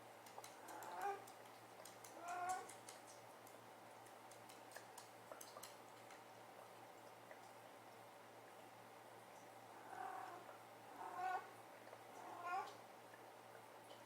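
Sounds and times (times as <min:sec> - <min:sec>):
faint clicks: 0:00.2 - 0:06.3.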